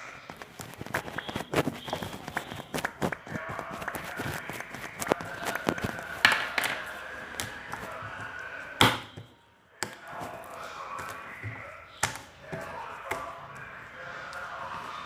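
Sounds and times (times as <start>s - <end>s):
busy background noise: 0.0s - 15.0s.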